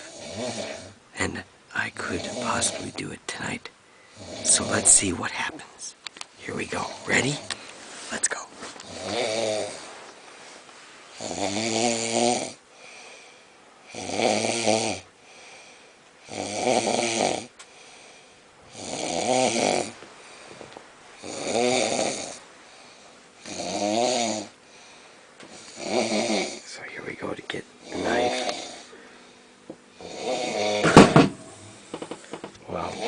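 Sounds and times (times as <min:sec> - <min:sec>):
man snoring: 0:00.0 - 0:01.0, 0:01.8 - 0:03.0, 0:04.1 - 0:05.1, 0:08.8 - 0:09.8, 0:11.2 - 0:20.0, 0:21.2 - 0:24.6, 0:25.5 - 0:26.7, 0:27.8 - 0:29.0, 0:29.9 - 0:33.0
soft breaths: 0:01.7 - 0:11.3, 0:12.6 - 0:13.9, 0:15.2 - 0:16.3, 0:17.6 - 0:18.8, 0:19.9 - 0:23.6, 0:24.5 - 0:25.9, 0:26.6 - 0:30.3.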